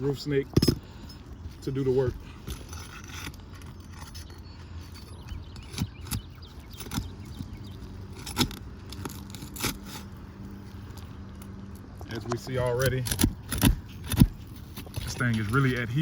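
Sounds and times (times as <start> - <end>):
metal tool scraping under shingles: 0.0 - 11.1, 12.1 - 16.0
shingles clicking and cracking: 10.8 - 16.0.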